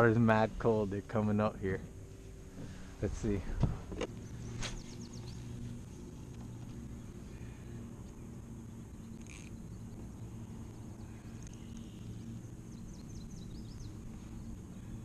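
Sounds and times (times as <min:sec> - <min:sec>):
low steady river hum: 0:00.0 - 0:15.0
brief rustle: 0:03.6 - 0:05.0
faint bird chirps: 0:06.9 - 0:15.0.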